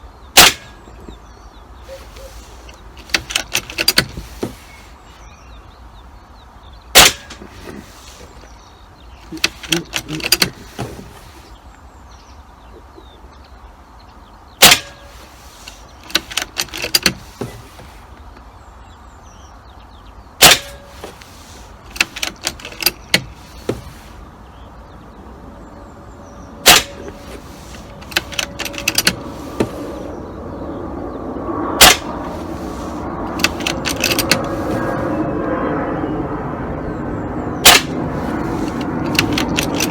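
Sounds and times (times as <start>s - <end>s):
air rifle shots: 0.4s - 0.9s, 7.0s - 7.8s, 14.6s - 17.5s, 20.4s - 21.2s, 26.6s - 30.1s, 31.8s - 35.1s, 37.6s - 39.9s
metallic clicks of rifle action: 2.0s - 4.5s, 9.3s - 11.1s, 14.6s - 17.5s, 21.9s - 23.9s, 26.6s - 29.8s, 31.8s - 32.6s, 33.3s - 35.1s, 37.6s - 39.9s.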